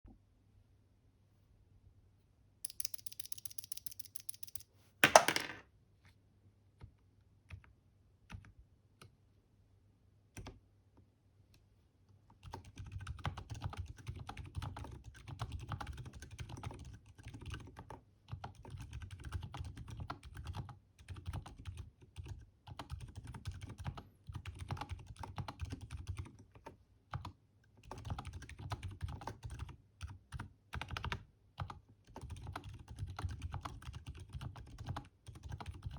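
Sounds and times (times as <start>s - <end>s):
soft muted keyboard typing: 2.7s - 4.6s, 6.7s - 9.3s, 10.3s - 35.9s.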